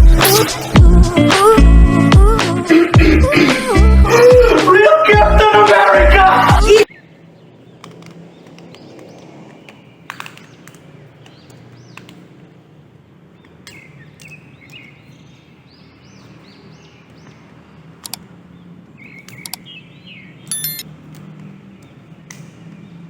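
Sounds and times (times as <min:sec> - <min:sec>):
birds chirping: 0:06.7 - 0:23.0
sharp clicks: 0:18.0 - 0:18.2, 0:19.2 - 0:19.6, 0:20.4 - 0:22.5.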